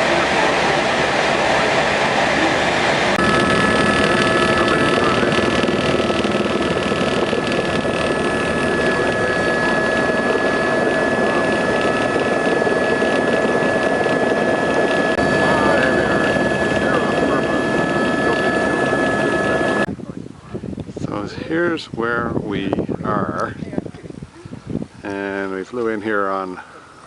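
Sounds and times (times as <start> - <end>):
helicopter engine and rotor: 0.0 - 19.9
high whine: 0.0 - 19.9.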